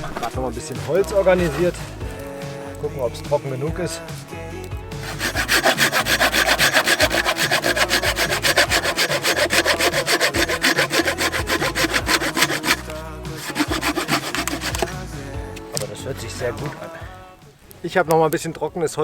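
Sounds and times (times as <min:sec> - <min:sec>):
saw cutting through wood: 0:00.0 - 0:02.1, 0:04.9 - 0:15.4.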